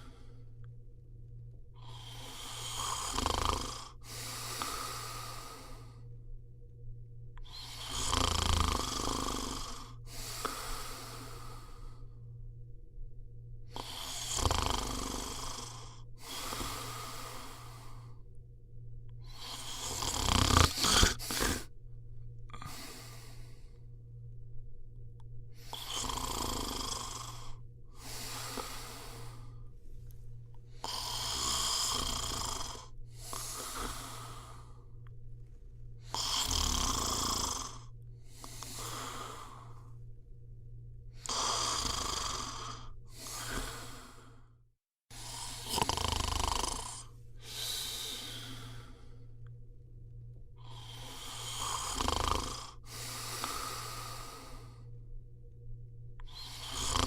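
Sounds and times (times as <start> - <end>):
steady low hum: 0.0 - 57.0
person snoring: 1.8 - 6.1, 7.4 - 12.2, 13.6 - 18.3, 19.2 - 21.7, 22.4 - 24.0, 25.6 - 29.7, 30.6 - 35.1, 36.0 - 40.0, 41.1 - 49.5, 50.6 - 54.9, 56.2 - 57.0.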